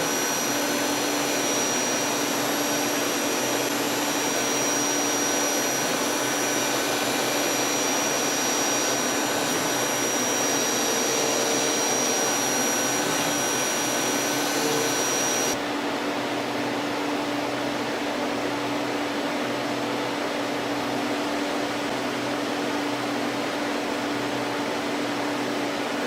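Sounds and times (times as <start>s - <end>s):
lathe mechanical whir: 0.0s - 15.6s
high-pitched machine whine: 0.0s - 16.3s.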